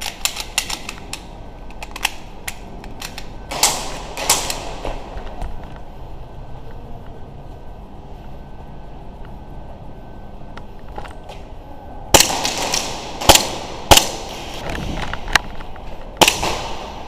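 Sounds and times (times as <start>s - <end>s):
airsoft gunfire: 12.1s - 14.6s, 16.2s - 17.0s
loud gun cracks: 12.2s - 14.6s, 16.2s - 17.0s.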